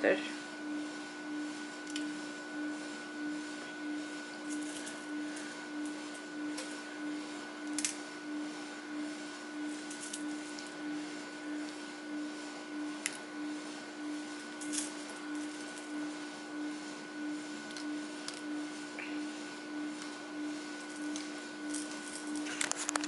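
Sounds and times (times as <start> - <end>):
pulsing droning hum: 0.0 - 23.0.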